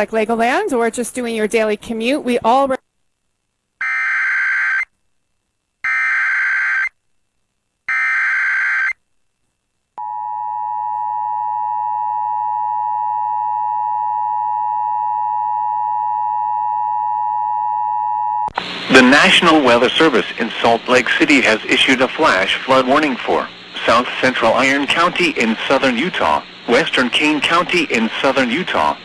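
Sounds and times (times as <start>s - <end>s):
digital header data bursts: 18.7s - 29.0s.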